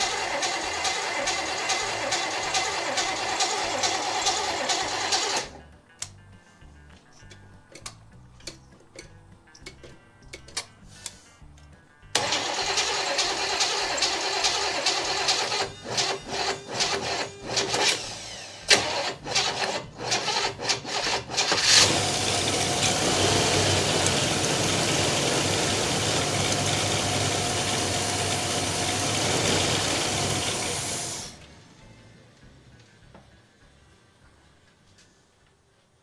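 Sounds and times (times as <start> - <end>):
car engine cranking and running: 0.0 - 5.6, 12.1 - 33.3.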